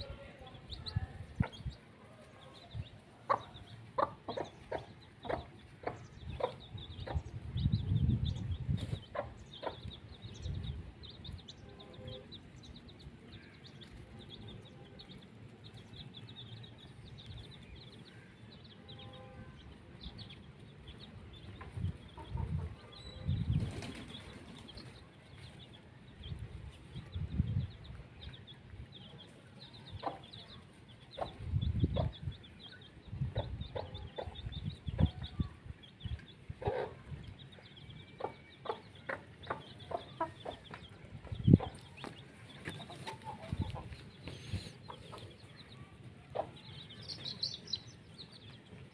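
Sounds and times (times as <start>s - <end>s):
chickens clucking: 0.6s - 13.0s, 20.2s - 25.7s, 26.3s - 48.9s.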